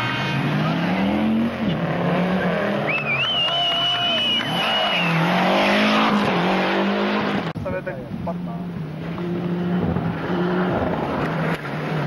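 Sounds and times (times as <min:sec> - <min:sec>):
rally car engine at speed: 0:00.0 - 0:12.0
tyre squeal: 0:02.9 - 0:06.1.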